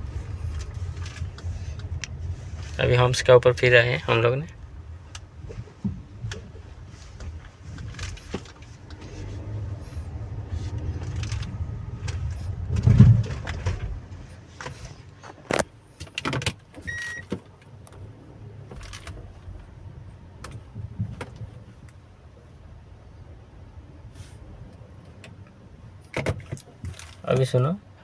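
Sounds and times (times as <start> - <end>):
suspension clicks and knocks: 0.0 - 22.1, 24.6 - 27.7
low road rumble: 0.0 - 28.0
heavy thump: 10.6 - 14.2
short beep: 16.9 - 17.3.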